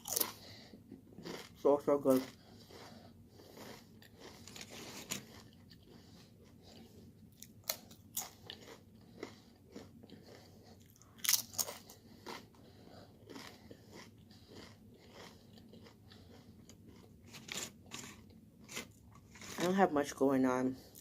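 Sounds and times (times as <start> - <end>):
person chewing food: 0.0 - 19.7
crisp crunching bites: 10.9 - 12.4.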